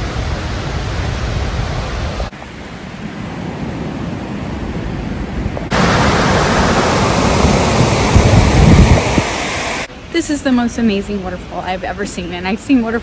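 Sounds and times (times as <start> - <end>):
waterfall roaring: 5.7 - 9.9.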